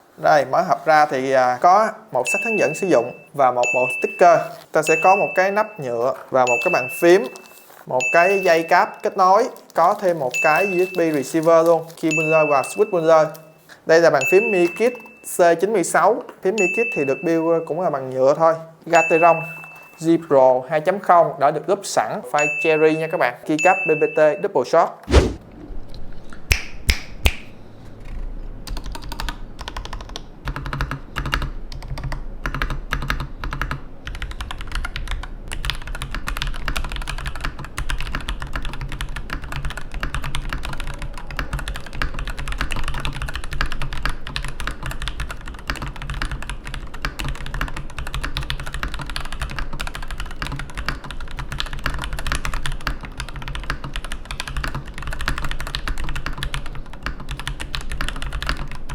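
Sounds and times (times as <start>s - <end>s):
mechanical keyboard typing: 2.2s - 13.5s, 28.7s - 58.9s.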